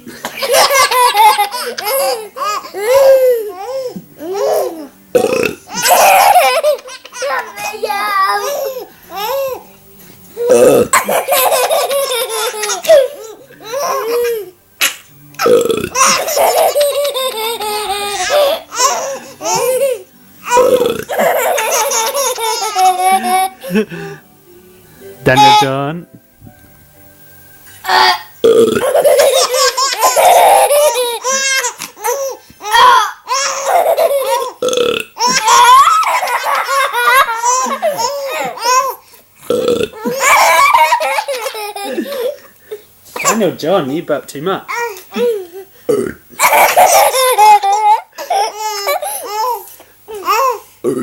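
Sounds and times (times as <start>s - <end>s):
baby laughing: 0.2s - 4.9s, 5.7s - 9.6s, 10.4s - 15.0s, 15.9s - 23.8s, 28.8s - 34.6s, 35.2s - 39.0s, 39.9s - 42.4s, 44.7s - 45.7s, 46.4s - 50.6s
burps: 5.2s - 5.7s, 10.4s - 11.1s, 15.4s - 16.1s, 20.5s - 21.4s, 28.4s - 29.0s, 34.6s - 35.2s, 39.4s - 40.1s, 45.9s - 46.3s
high-pitched laughter: 35.2s - 38.8s, 40.0s - 42.4s.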